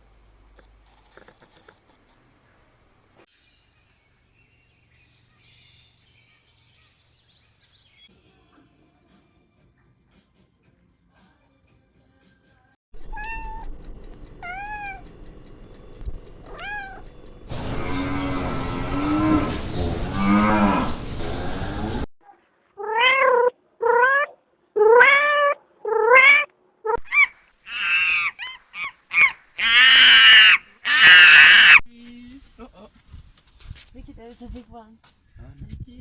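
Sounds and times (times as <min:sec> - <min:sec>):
background noise: 0:00.0 - 0:10.8, 0:22.2 - 0:36.0
cat meowing: 0:13.0 - 0:13.7, 0:14.4 - 0:15.1, 0:16.4 - 0:17.1, 0:22.8 - 0:28.4.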